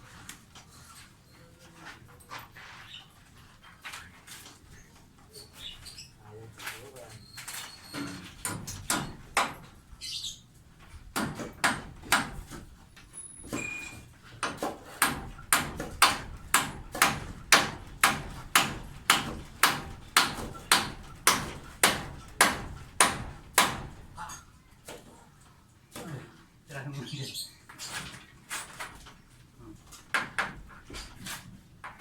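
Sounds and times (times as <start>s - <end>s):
hammer strikes: 8.4s - 9.7s, 11.2s - 12.6s, 14.4s - 24.0s.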